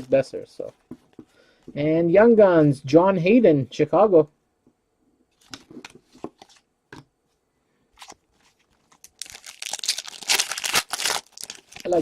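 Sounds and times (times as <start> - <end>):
card pack wrapper crinkling: 8.0 - 12.0.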